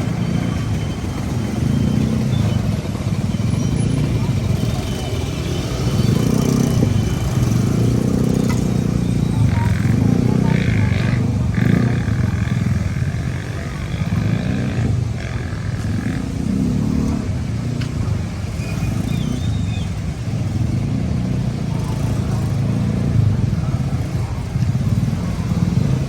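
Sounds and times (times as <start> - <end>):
motorcycles: 0.0 - 26.0
vehicle engines in traffic: 0.0 - 26.0.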